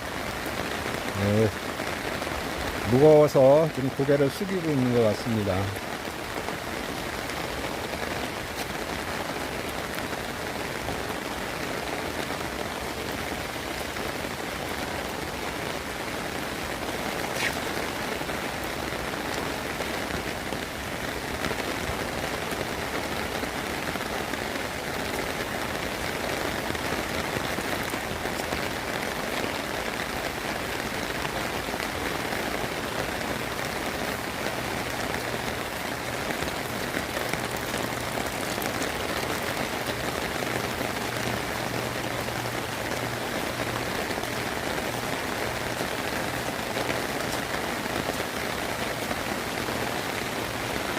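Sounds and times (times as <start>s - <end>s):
steady rain falling: 0.0s - 50.9s.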